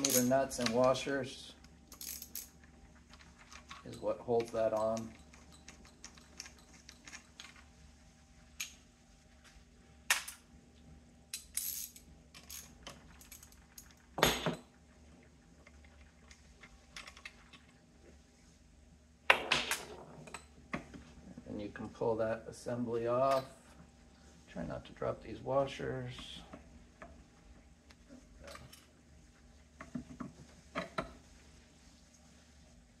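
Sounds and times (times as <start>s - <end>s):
metallic clicks and clinks: 0.0s - 0.9s, 3.6s - 7.6s.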